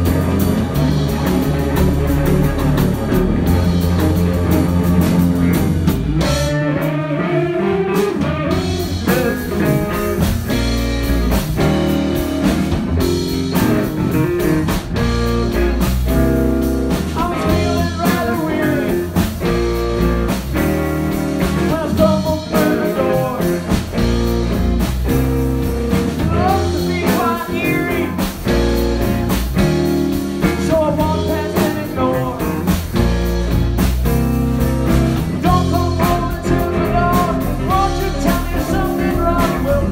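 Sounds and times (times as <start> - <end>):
blues rock band playing: 0.0 - 39.9
person singing: 17.2 - 19.3, 21.4 - 23.8, 26.2 - 28.4, 30.4 - 32.8, 35.4 - 39.9.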